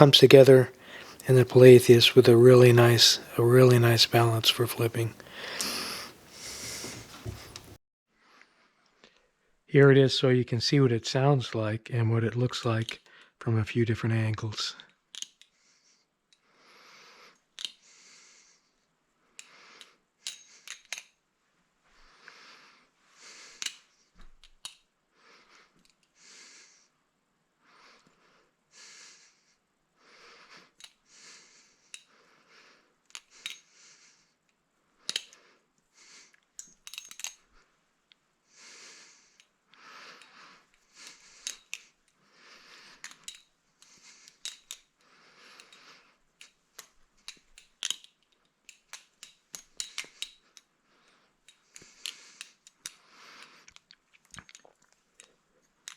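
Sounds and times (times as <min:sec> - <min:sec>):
metal knife handles clicking: 0:15.1 - 0:15.5, 0:20.2 - 0:21.2, 0:23.6 - 0:24.8, 0:33.1 - 0:33.7, 0:35.1 - 0:35.4, 0:36.6 - 0:37.5, 0:40.2 - 0:42.2, 0:43.0 - 0:44.9, 0:45.6 - 0:50.7.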